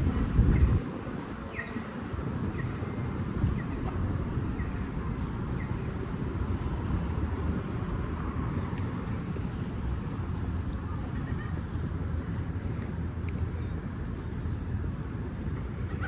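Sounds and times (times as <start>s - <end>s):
street traffic rumble: 0.0s - 16.0s.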